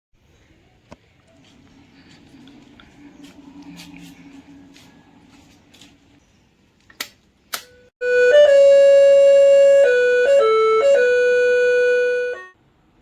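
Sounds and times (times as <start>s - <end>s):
electronic keyboard flute-like notes: 8.0s - 12.6s.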